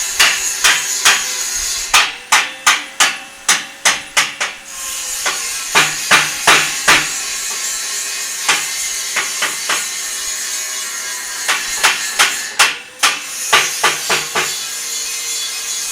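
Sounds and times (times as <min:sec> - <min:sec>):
hammer blows on metal: 0:00.0 - 0:04.6
steady hiss: 0:00.0 - 0:10.4.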